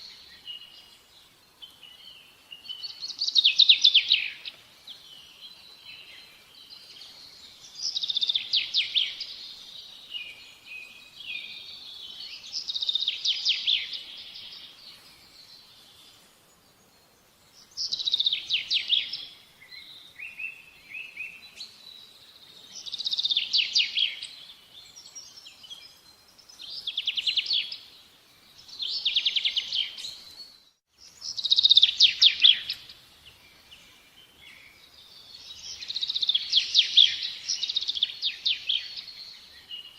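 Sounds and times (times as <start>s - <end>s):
small bird trilling song: 6.9s - 10.5s, 11.1s - 15.8s, 17.6s - 22.1s, 22.7s - 32.9s, 34.2s - 39.9s.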